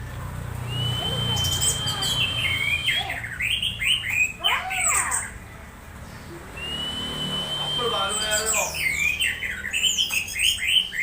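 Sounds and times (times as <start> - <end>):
thrush singing: 0.6 - 4.3.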